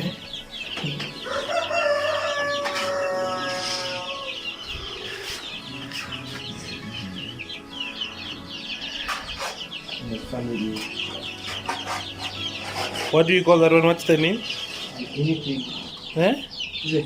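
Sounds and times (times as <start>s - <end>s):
poultry chirping and clucking: 0.0s - 17.0s
rooster crowing: 1.2s - 4.7s.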